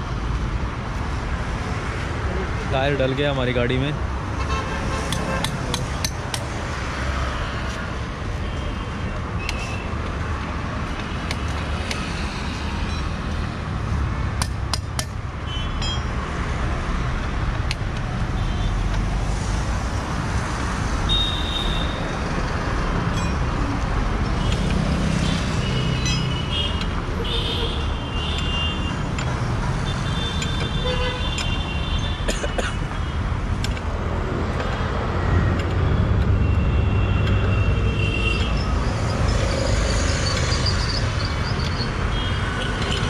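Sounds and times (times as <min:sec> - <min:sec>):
road traffic: 0:00.0 - 0:43.0
sharp metallic clicks: 0:24.4 - 0:27.0, 0:27.6 - 0:32.0, 0:33.4 - 0:43.0.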